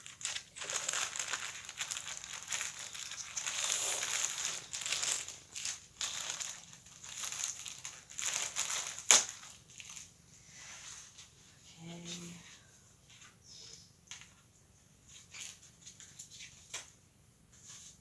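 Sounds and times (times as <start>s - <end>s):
packaging crinkling and crumpling: 0.0s - 10.2s.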